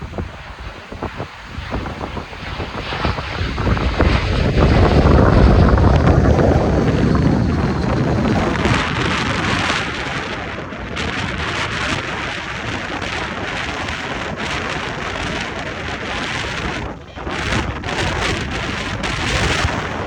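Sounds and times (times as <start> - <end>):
jet airliner rumble: 0.0 - 20.0
wind buffeting microphone: 0.0 - 20.0.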